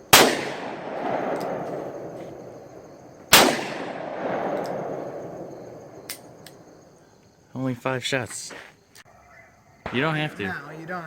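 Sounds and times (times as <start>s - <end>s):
handgun shots with echo: 0.2s - 2.5s, 3.3s - 6.6s.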